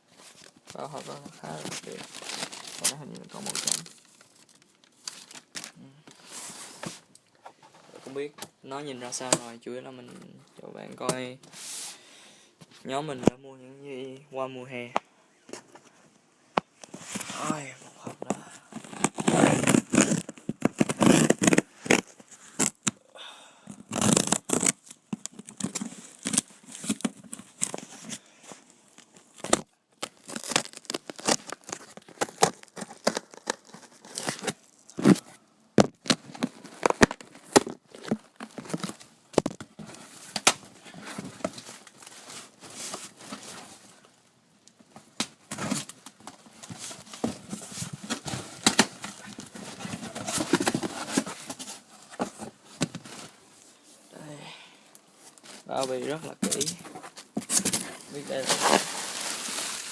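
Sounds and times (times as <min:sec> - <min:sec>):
packaging crinkling: 0:00.4 - 0:05.8, 0:28.9 - 0:35.2, 0:56.4 - 0:59.9
packing tape tearing: 0:01.5 - 0:05.8, 0:18.7 - 0:23.0, 0:23.8 - 0:27.9, 0:29.3 - 0:39.6, 0:56.4 - 0:59.9.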